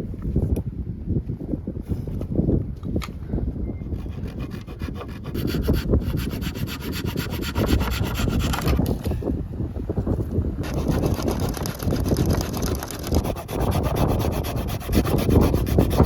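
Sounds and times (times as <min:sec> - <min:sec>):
wind rumbling on microphone: 0:00.0 - 0:16.0
hand saw cutting wood: 0:04.0 - 0:08.8, 0:10.6 - 0:16.0.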